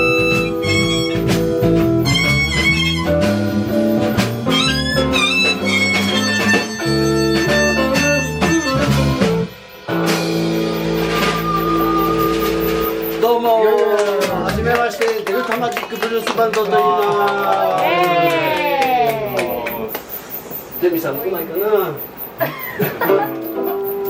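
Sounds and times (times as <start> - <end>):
blues band playing live: 0.0 - 15.2, 17.4 - 24.0.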